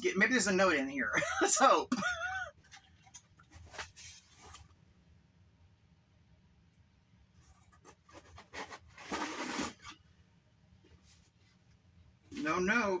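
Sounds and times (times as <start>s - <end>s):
packaging rustling and scraping: 2.7s - 4.7s, 7.5s - 10.0s.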